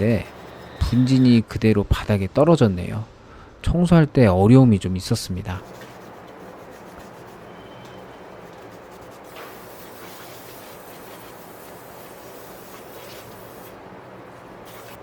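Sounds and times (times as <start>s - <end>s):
scratchy rubbing: 0.0s - 1.2s, 5.6s - 13.7s, 14.6s - 15.0s
steady hiss: 8.7s - 13.8s, 14.6s - 15.0s.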